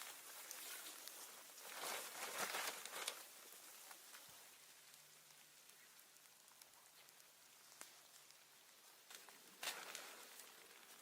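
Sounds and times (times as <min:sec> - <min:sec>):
faint hiss: 0:00.0 - 0:11.0
soft ticks: 0:03.9 - 0:10.5.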